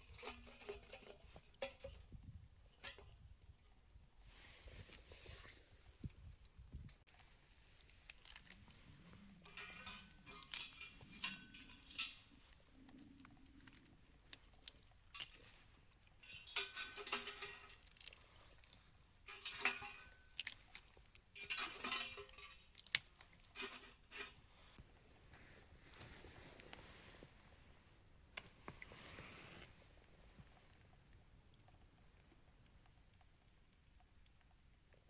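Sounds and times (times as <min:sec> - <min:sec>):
metal cookware clinking and scraping: 0:00.0 - 0:02.0, 0:09.4 - 0:12.4, 0:16.2 - 0:17.9, 0:19.3 - 0:20.4, 0:21.4 - 0:22.7, 0:23.5 - 0:24.7.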